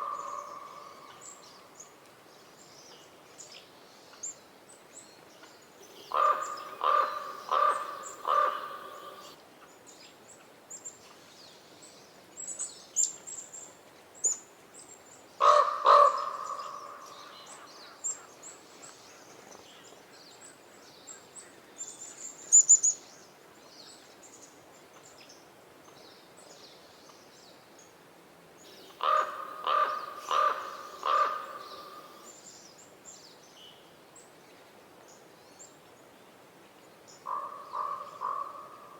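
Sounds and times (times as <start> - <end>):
raven croaking: 5.8 - 9.4, 28.7 - 32.3, 37.3 - 38.9.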